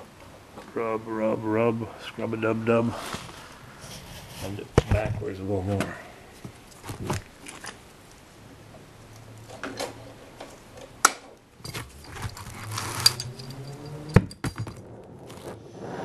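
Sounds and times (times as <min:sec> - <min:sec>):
low steady hum: 0:10.7 - 0:15.2
metallic clinks and knocks: 0:11.6 - 0:14.9.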